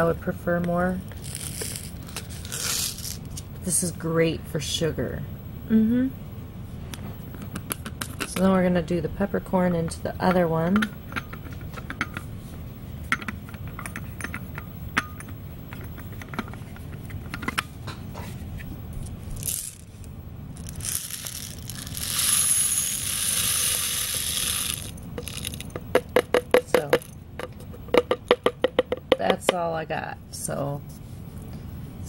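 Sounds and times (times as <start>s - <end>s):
peppercorns pouring into grinder: 19.4s - 19.9s, 20.6s - 25.8s.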